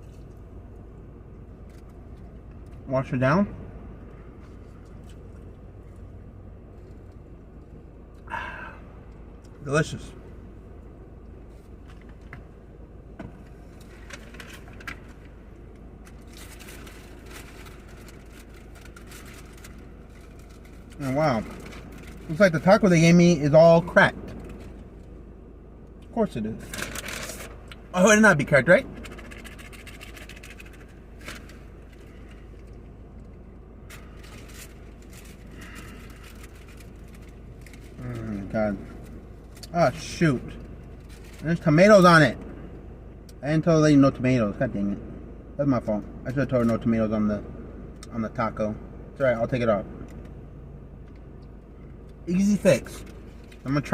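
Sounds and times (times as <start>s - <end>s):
steady low hum: 0.0s - 53.9s
steady low rumble: 0.0s - 53.9s
taco shell crackle: 13.6s - 22.4s, 26.6s - 27.8s, 28.8s - 39.7s
paper wrapper crinkling: 16.1s - 22.5s, 26.6s - 27.7s, 28.8s - 32.7s, 33.9s - 38.4s.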